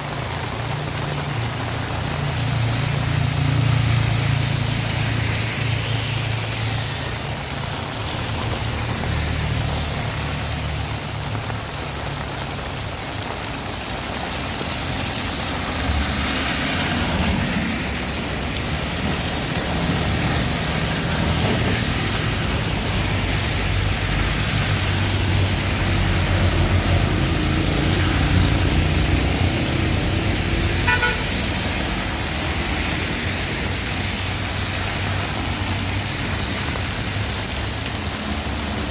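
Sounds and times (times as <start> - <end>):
heavy rain falling: 0.0 - 38.9
vehicles going by: 0.0 - 38.9
short horn toot: 30.9 - 31.4.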